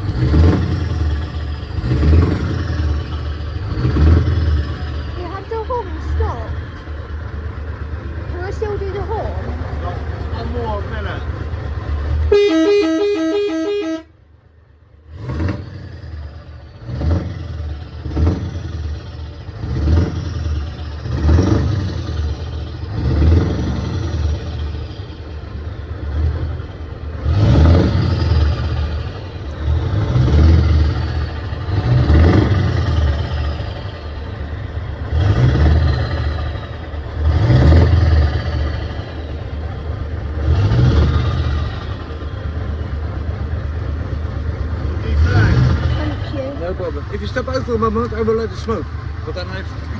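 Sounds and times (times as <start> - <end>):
diesel engine revving with whistle: 0.0 - 7.4, 8.3 - 14.1, 15.0 - 49.9
truck horn chord: 12.3 - 14.2.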